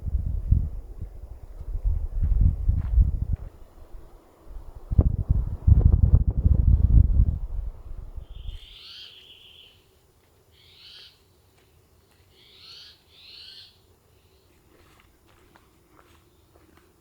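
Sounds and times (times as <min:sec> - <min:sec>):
bird calling: 0:08.2 - 0:09.9, 0:10.5 - 0:11.2, 0:12.3 - 0:14.5.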